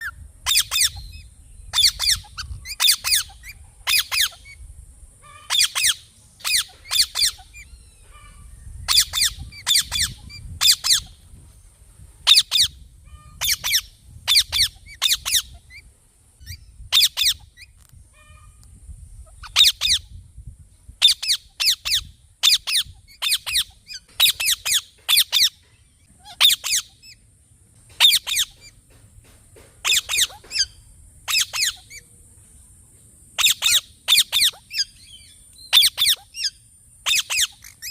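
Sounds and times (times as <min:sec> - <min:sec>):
parrot screeching: 0:05.2 - 0:11.1, 0:26.2 - 0:27.0, 0:35.7 - 0:36.5.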